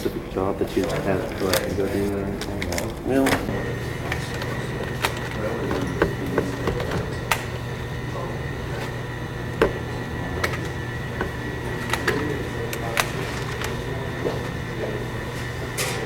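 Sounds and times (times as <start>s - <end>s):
clicks and knocks of handling: 0.8s - 7.5s, 10.4s - 14.4s.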